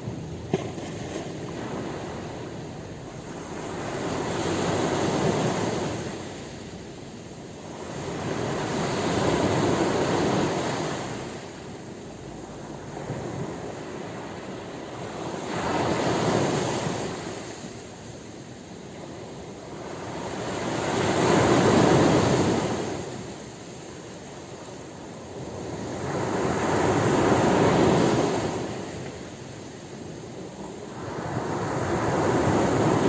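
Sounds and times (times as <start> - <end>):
ocean waves breaking: 0.0 - 6.8.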